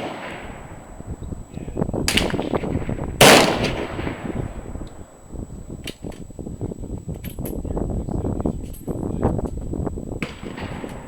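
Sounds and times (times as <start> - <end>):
rifle shot: 0.0 - 0.8, 2.0 - 4.6, 10.2 - 11.0.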